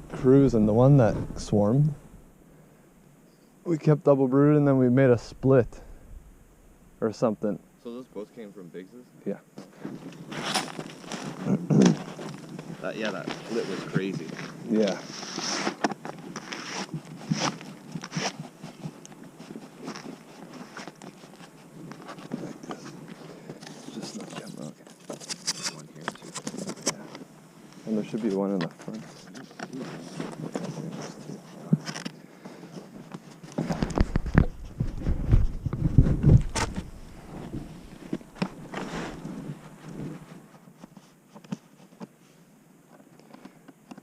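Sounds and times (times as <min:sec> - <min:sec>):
heavy low rumbling thumps: 0:00.0 - 0:02.4, 0:05.1 - 0:07.0
hands rustling and scraping equipment: 0:09.6 - 0:42.4.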